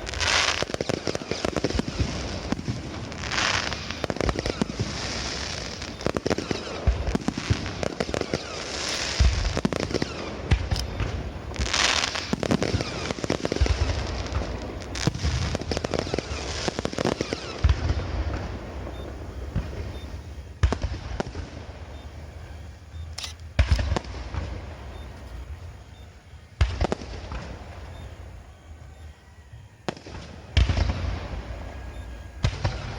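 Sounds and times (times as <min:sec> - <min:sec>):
loud firework bangs: 0:00.0 - 0:22.7
fireworks bursting and crackling: 0:00.0 - 0:32.9.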